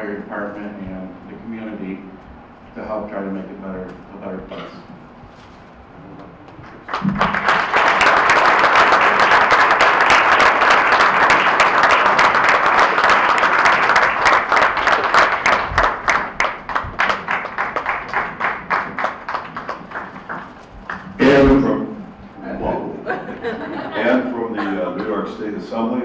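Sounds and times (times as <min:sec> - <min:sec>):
audience applauding: 0:06.7 - 0:21.3.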